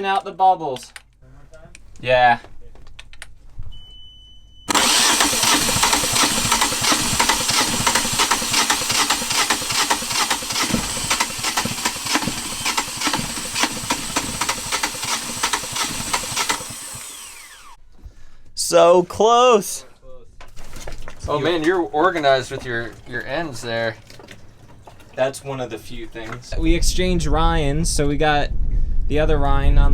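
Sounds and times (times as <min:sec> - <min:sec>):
diesel engine cranking: 0:04.7 - 0:17.8.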